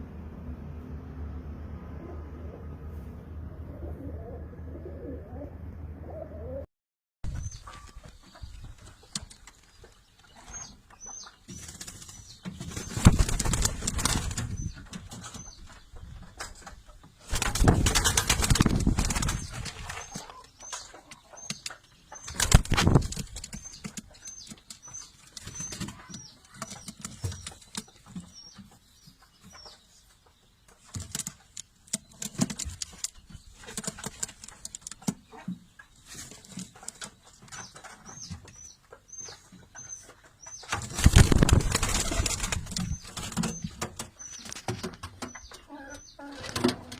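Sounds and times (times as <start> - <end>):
pigeons cooing: 3.6 - 6.7
small bird chirping: 7.3 - 17.4, 18.4 - 46.9
pigeons flapping wings: 11.5 - 15.4, 17.2 - 20.3, 22.3 - 24.5, 40.7 - 45.0.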